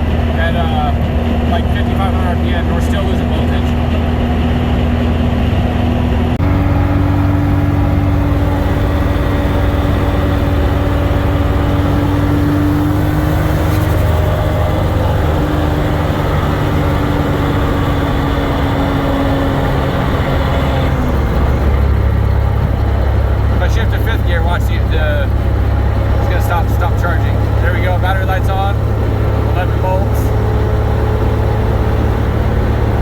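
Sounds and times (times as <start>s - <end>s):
car engine at high revs: 0.0s - 33.0s
road noise: 0.0s - 33.0s.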